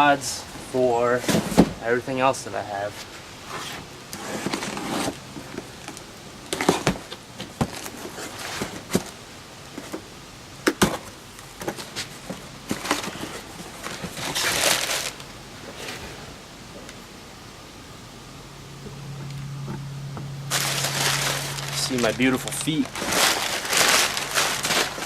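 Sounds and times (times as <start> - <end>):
packaging rustling: 4.2 - 9.2, 10.8 - 16.0, 20.5 - 25.0.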